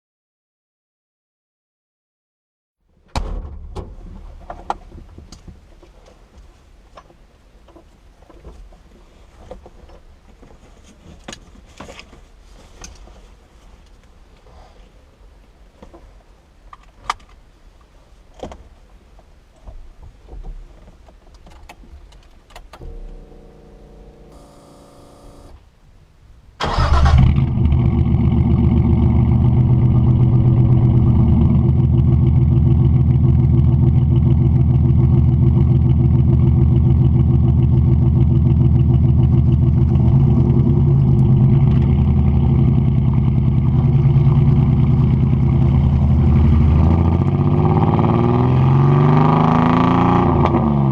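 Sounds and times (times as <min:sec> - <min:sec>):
car engine idling: 0:22.8 - 0:25.5, 0:26.7 - 0:46.3
starter motor cranking: 0:22.8 - 0:25.6.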